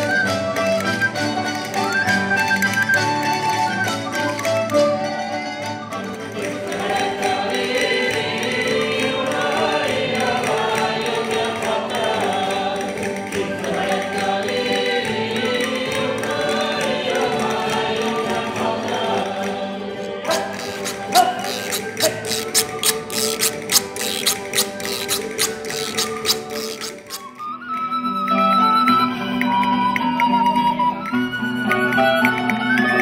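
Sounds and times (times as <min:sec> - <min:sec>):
choir singing: 0:06.4 - 0:27.2
plucked or struck strokes: 0:06.4 - 0:27.4.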